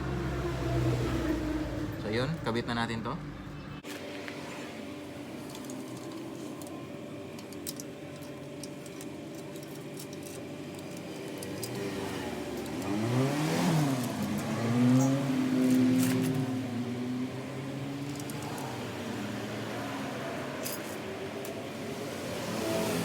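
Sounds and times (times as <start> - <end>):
engine running: 3.4 - 23.0
metallic chain clinks: 18.0 - 18.8.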